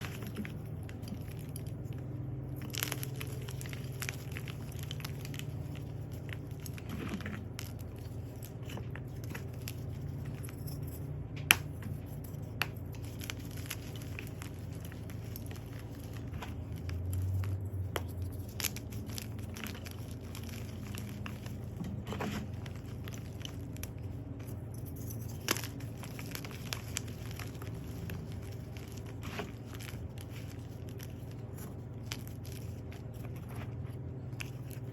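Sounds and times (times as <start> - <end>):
steady low hum: 0.0 - 34.9
chalk being crushed: 11.5 - 33.8.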